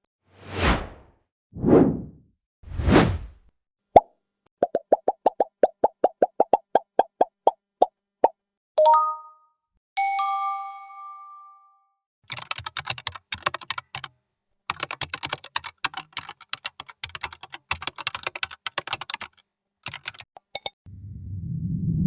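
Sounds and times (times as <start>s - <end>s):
typing on computer keyboard: 12.3s - 14.1s, 14.7s - 20.7s.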